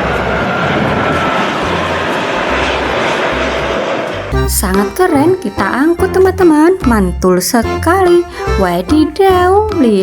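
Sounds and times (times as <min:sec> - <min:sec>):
rushing engine-like noise: 0:00.0 - 0:05.9.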